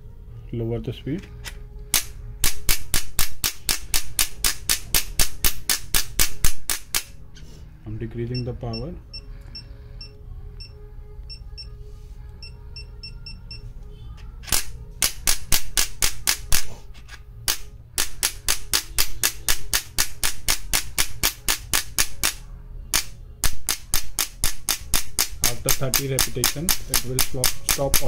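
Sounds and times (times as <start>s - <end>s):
short electronic beeps: 12.4s - 13.7s.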